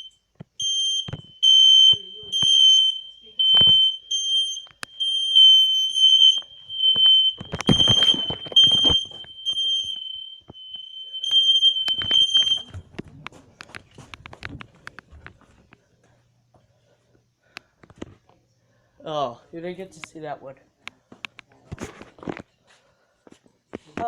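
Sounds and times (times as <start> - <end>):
smoke alarm high tone: 0.0 - 12.9.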